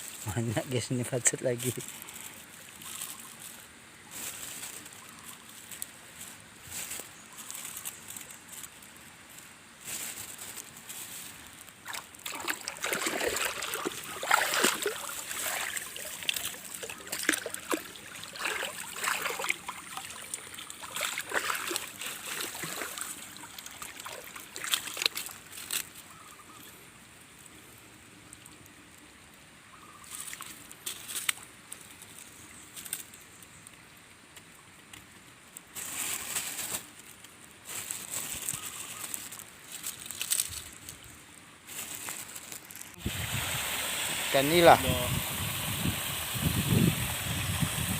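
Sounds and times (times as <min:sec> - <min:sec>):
water splashing and sloshing: 0:09.9 - 0:26.1.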